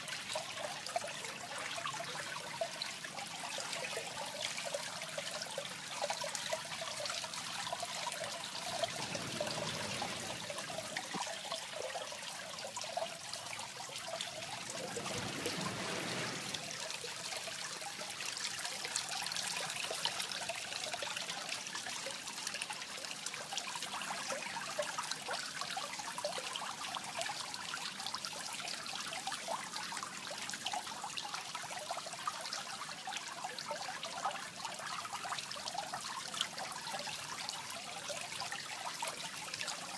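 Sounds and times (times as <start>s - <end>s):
water trickling into pond: 0.0s - 39.9s.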